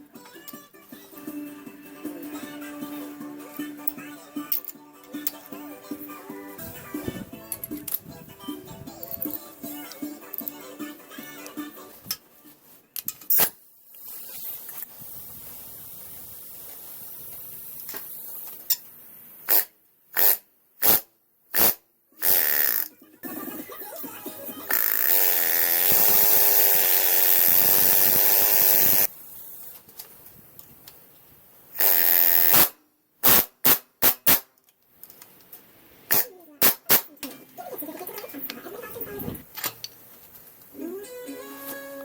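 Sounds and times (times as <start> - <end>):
pneumatic rivet gun firing: 13.3 - 13.6, 19.5 - 22.9, 24.7 - 29.1, 31.8 - 34.5, 36.1 - 37.1.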